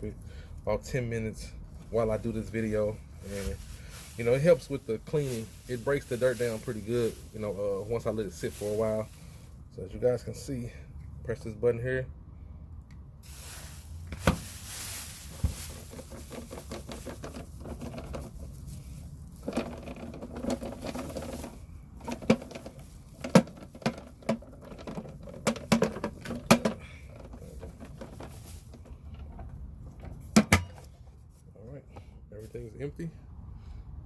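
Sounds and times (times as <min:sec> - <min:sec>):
plastic bag rustling: 0:01.8 - 0:09.6, 0:13.2 - 0:30.4
dirt pouring into bag: 0:02.0 - 0:09.4, 0:13.2 - 0:29.0
canister tapping knocks: 0:30.3 - 0:30.8.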